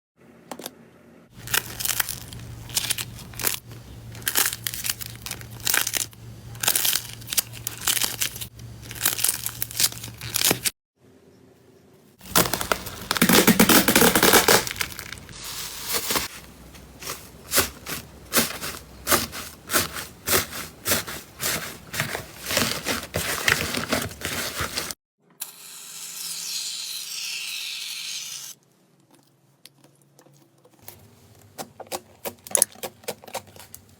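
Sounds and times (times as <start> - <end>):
slime crackling and popping: 12.2 - 15.3.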